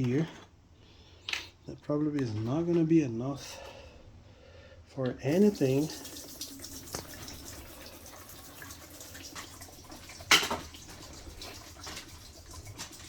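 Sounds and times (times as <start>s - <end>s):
liquid trickling into a tank: 5.2s - 13.0s.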